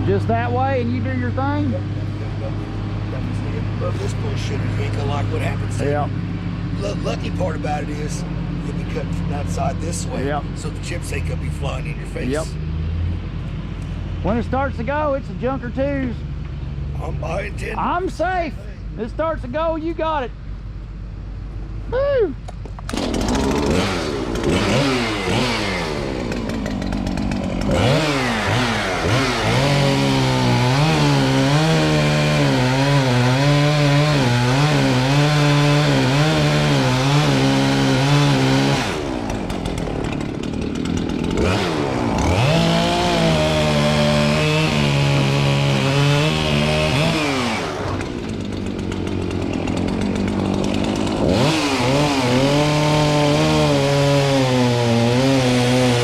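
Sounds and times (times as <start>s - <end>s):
chainsaw cutting a tree: 0.0s - 6.1s, 6.8s - 11.0s, 12.1s - 12.6s, 22.8s - 56.0s.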